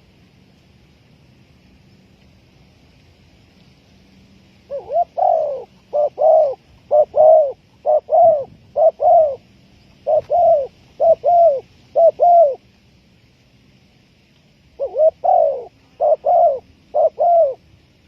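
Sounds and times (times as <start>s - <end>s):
dove cooing: 4.7s - 12.6s, 14.8s - 17.6s.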